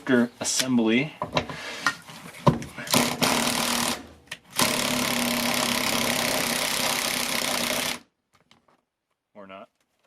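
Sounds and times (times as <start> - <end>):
power tool running: 2.9 - 8.1.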